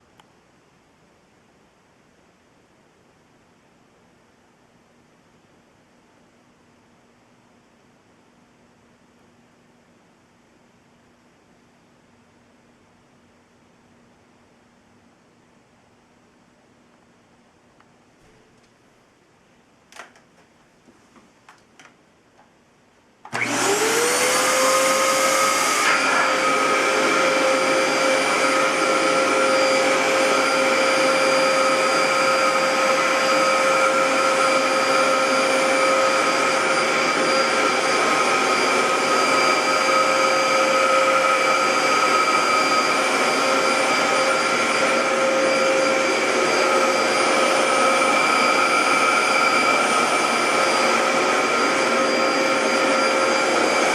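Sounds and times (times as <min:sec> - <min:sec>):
vacuum cleaner motor whining: 0:23.3 - 0:53.9.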